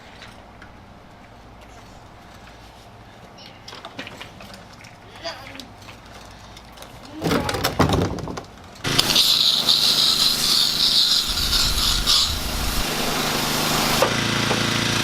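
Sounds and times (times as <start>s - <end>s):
lawn mower engine running: 8.8s - 15.0s.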